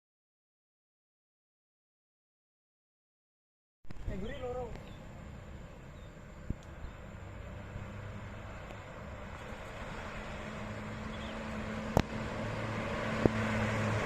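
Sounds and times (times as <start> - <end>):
bus engine hum: 4.0 - 14.0.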